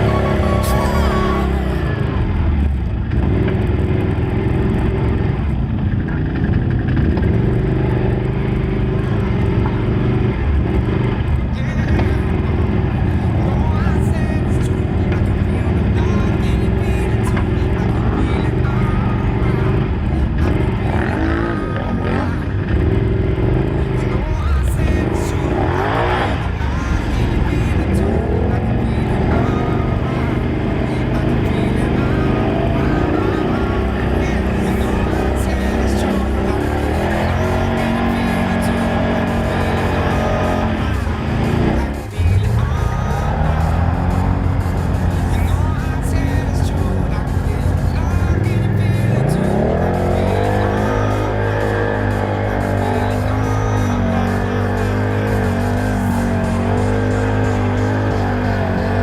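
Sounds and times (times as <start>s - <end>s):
music: 0.0s - 2.5s, 9.1s - 21.2s, 23.6s - 59.0s
atv engines running: 0.0s - 59.0s.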